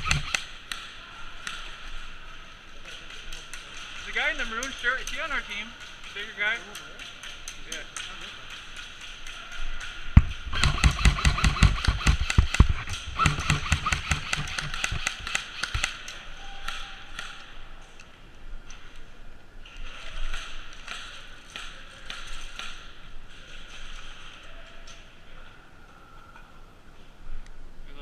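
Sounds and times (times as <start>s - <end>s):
airsoft guns firing: 0.0s - 0.9s, 9.8s - 17.5s.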